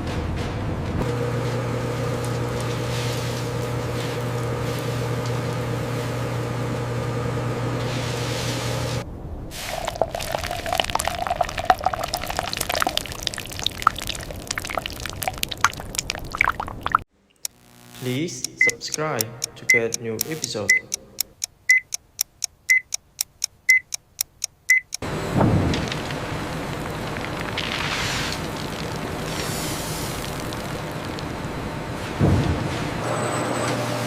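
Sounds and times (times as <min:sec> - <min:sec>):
machine hum: 0:00.4 - 0:09.0, 0:17.2 - 0:21.2, 0:25.0 - 0:34.0.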